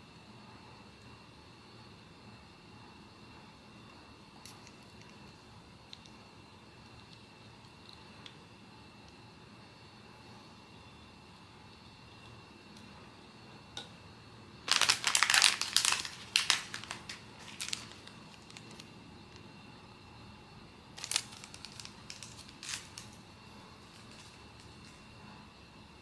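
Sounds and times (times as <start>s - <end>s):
plastic wrapping crinkling: 14.7s - 18.9s, 21.0s - 25.1s.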